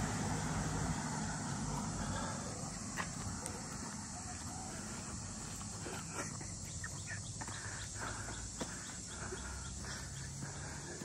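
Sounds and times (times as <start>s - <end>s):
insects chirring: 0.0s - 11.0s
light scuffs and clicks: 2.9s - 6.1s.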